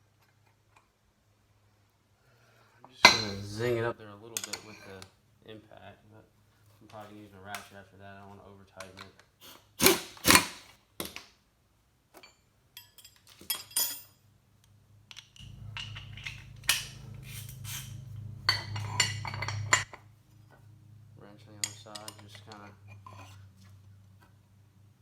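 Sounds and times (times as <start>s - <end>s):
impact wrench running: 9.8s - 10.7s
tools clinking: 12.2s - 14.2s, 15.1s - 20.0s, 21.6s - 23.4s
metal clanks: 15.3s - 20.0s.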